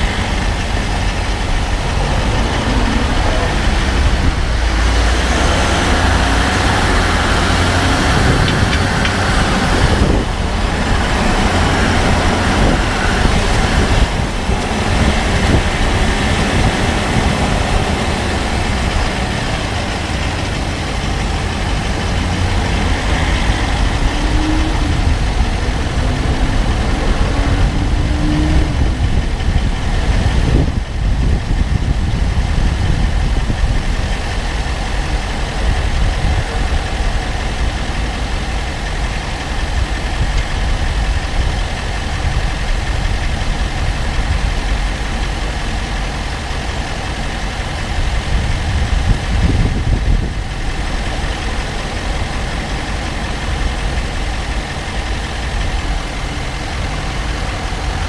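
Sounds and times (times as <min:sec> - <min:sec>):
diesel engine running: 0:00.0 - 0:58.0.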